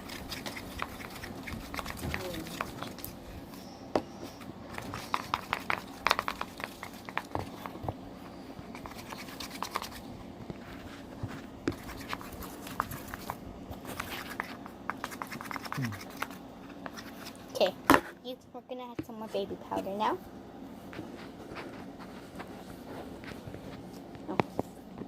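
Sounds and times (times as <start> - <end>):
slime being stirred by hand: 0.0 - 3.5, 4.2 - 17.8.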